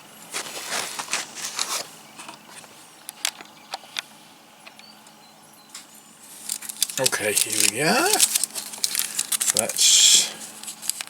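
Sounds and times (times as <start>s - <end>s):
packaging rustling: 0.3s - 2.7s, 6.2s - 11.0s.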